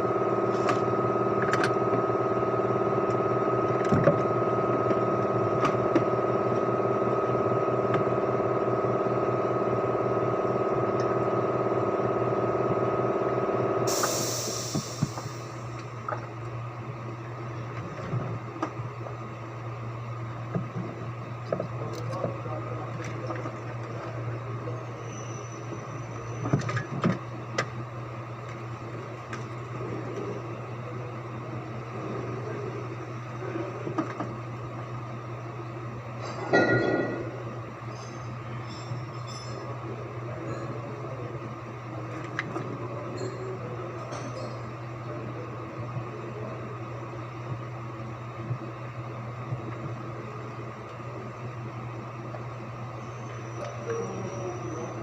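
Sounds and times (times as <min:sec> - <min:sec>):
engine idling: 0:00.0 - 0:55.0
short hiss: 0:13.9 - 0:15.5
low steady hum: 0:25.6 - 0:55.0.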